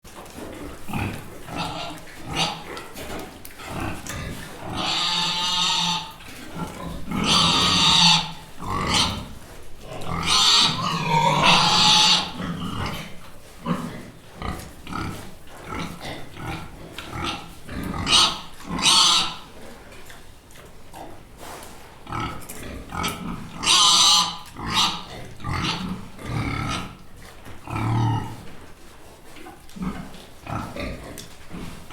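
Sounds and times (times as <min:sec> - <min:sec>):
pigs grunting: 0:00.4 - 0:19.8, 0:20.6 - 0:28.6, 0:29.2 - 0:31.9
pig squealing: 0:01.5 - 0:02.7, 0:04.6 - 0:09.3, 0:10.0 - 0:12.7, 0:17.2 - 0:19.4, 0:23.0 - 0:26.9.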